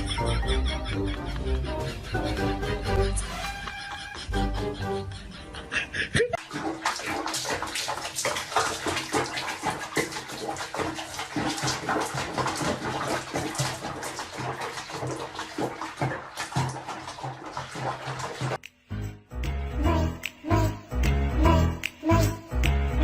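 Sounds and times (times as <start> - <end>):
water splashing: 6.4 - 18.6.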